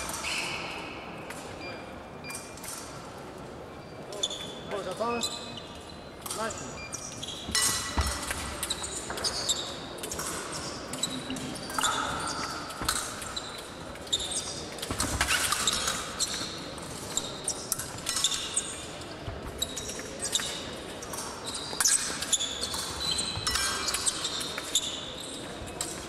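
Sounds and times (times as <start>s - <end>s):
shoe squeaks: 3.8s - 26.0s
knocking footwork and stamps: 7.5s - 8.7s.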